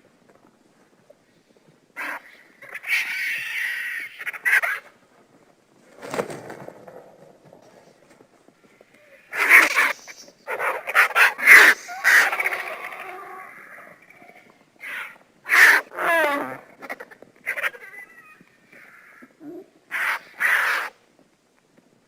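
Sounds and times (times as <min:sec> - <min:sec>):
vultures raspy hissing calls: 0:02.0 - 0:04.9, 0:08.8 - 0:21.0.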